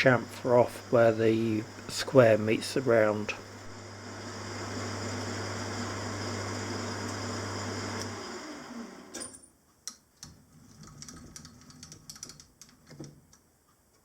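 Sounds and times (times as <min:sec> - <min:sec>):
lathe motor winding down: 0:00.0 - 0:09.2.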